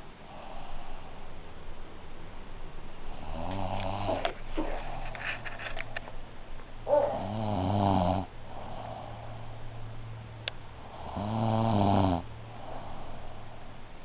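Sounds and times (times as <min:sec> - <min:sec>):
woman snoring: 0:03.1 - 0:05.0, 0:07.1 - 0:09.4, 0:10.9 - 0:13.2.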